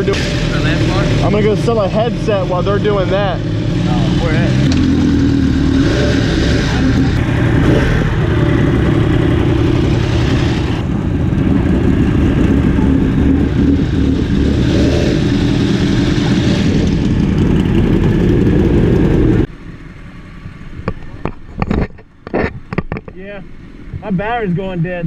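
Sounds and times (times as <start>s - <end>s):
motorcycle engine running loudly: 0.0s - 19.5s.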